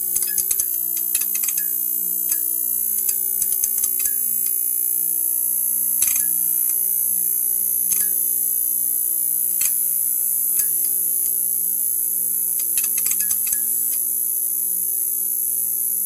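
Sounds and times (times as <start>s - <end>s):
crackling clicks: 0.0s - 1.7s
neon sign buzzing: 0.0s - 16.0s.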